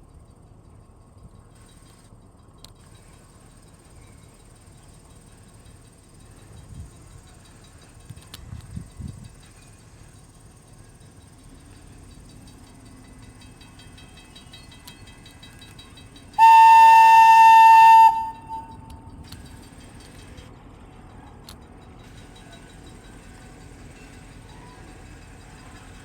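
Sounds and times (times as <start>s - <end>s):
low steady rumble: 16.4s - 19.1s
train whistle: 16.4s - 19.1s.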